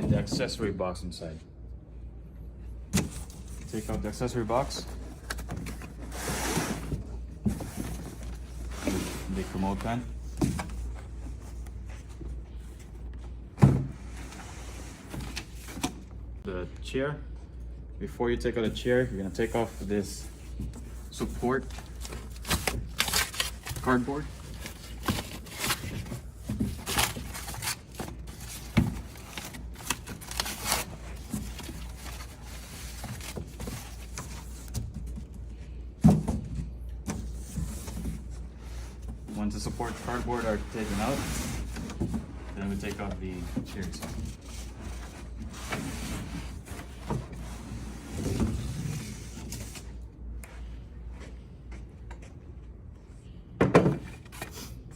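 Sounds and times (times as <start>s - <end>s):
cardboard scraping and rustling: 3.0s - 13.0s, 18.9s - 35.3s, 36.3s - 49.9s.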